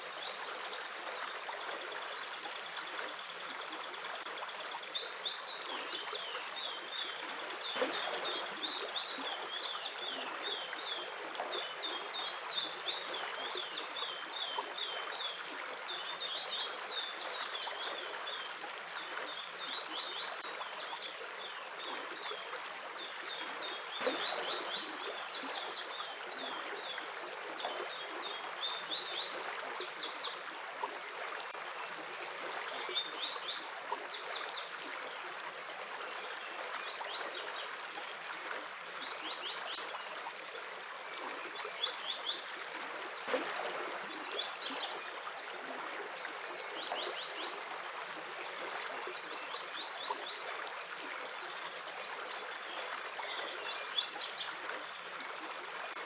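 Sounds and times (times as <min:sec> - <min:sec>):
stream running: 0:00.0 - 0:56.0.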